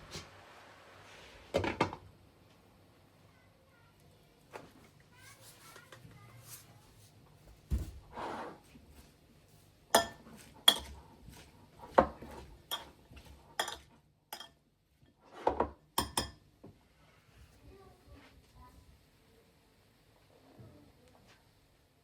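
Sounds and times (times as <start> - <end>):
dish scraping: 8.1 - 8.6
dishes clinking: 9.9 - 11.0, 12.7 - 13.0, 13.6 - 14.6, 15.6 - 16.4.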